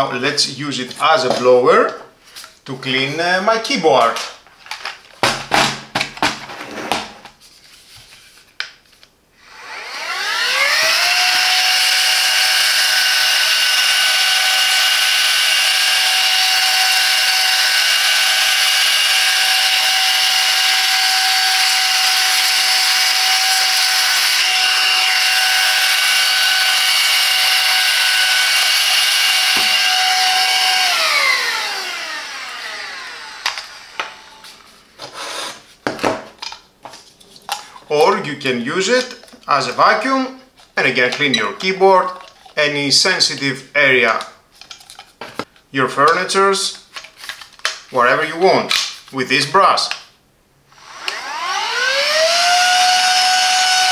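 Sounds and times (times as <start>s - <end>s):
handheld vacuum motor whine: 9.4s - 34.6s, 50.7s - 53.9s.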